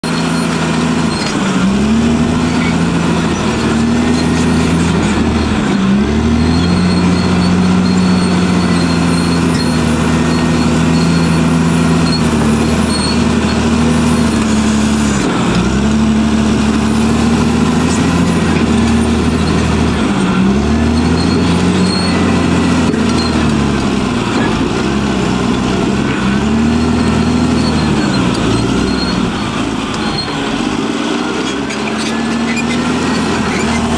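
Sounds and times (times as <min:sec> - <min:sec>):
bulldozer diesel engine under load: 0:00.0 - 0:33.9.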